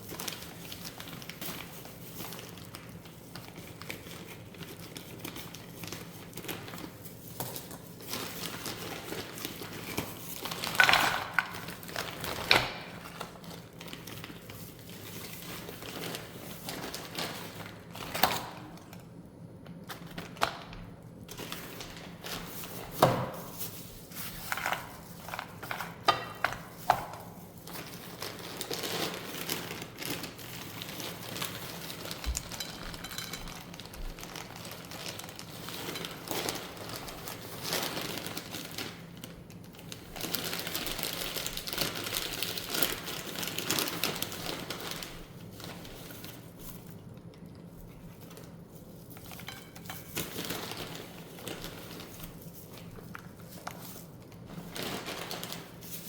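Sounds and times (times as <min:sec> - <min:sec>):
packaging crinkling: 0:00.0 - 0:56.0.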